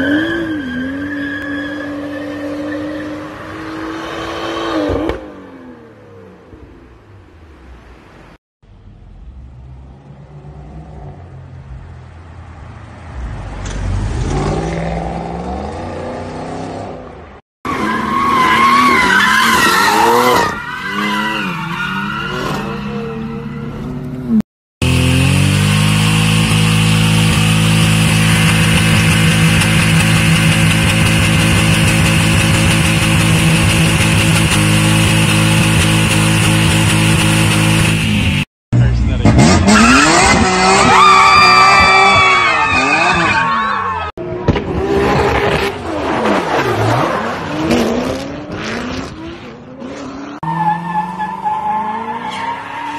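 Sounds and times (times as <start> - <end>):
car engine revving: 24.3 - 43.3.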